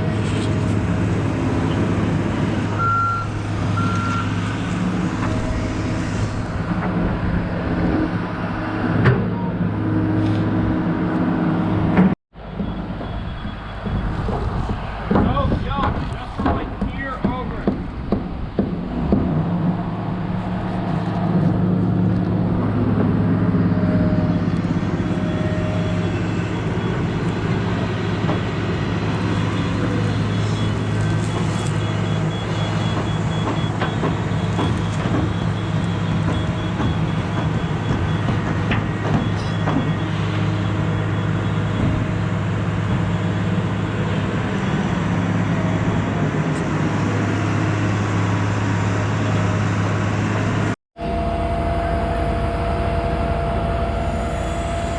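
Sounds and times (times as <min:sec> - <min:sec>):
excavator diesel engine running: 0:00.0 - 0:16.9, 0:18.0 - 0:54.9
knocks and clanks: 0:11.9 - 0:19.6, 0:30.8 - 0:40.1.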